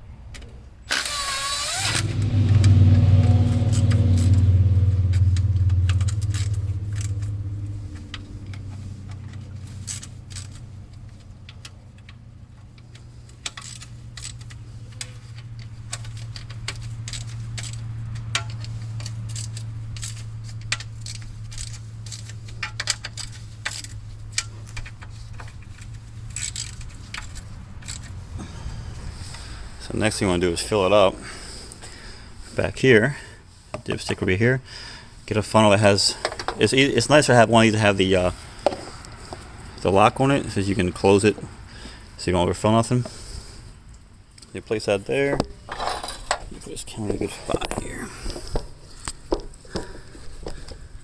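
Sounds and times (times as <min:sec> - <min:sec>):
power tool whirring: 0:00.9 - 0:02.8
machine humming: 0:01.8 - 0:08.7.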